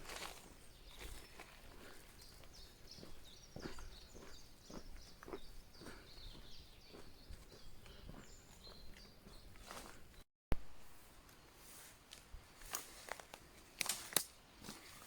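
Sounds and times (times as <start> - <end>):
faint bird chirps: 0.3 - 10.2.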